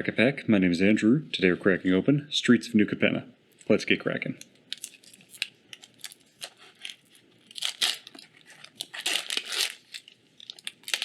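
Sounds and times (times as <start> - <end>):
foil wrapper tearing and crinkling: 4.7 - 11.0.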